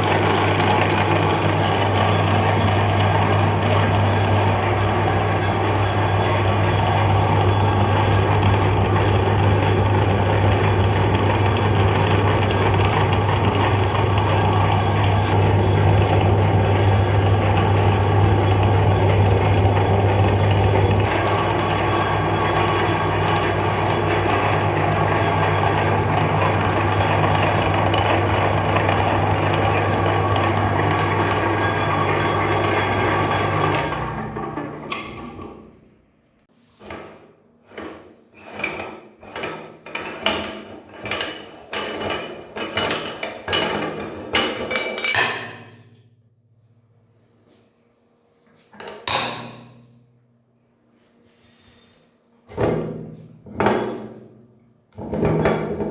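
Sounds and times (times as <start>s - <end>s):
electric meat grinder humming: 0.0s - 35.5s.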